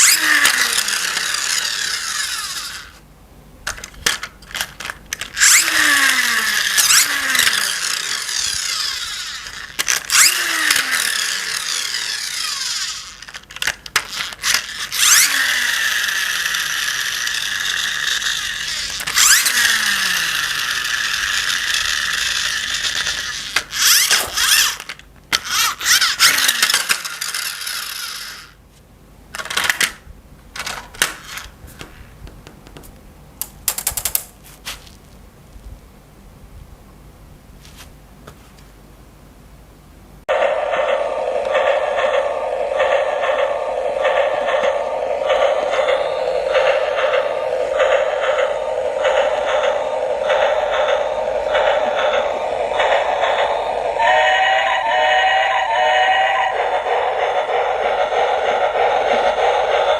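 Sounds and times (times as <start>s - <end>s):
plastic toy mechanism whirring: 0.0s - 3.0s, 3.7s - 28.6s, 29.4s - 30.0s, 30.6s - 31.6s, 33.4s - 34.4s
sharp plastic clicks: 32.7s - 34.4s.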